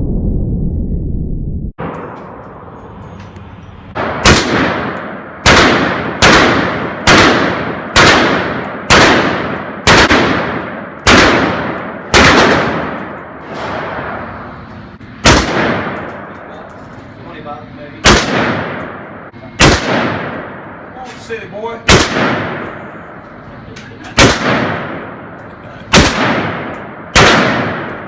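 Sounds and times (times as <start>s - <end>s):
gunshots with ringing decay: 4.0s - 14.3s, 15.2s - 16.6s, 18.0s - 20.9s, 21.8s - 23.1s, 24.2s - 28.0s.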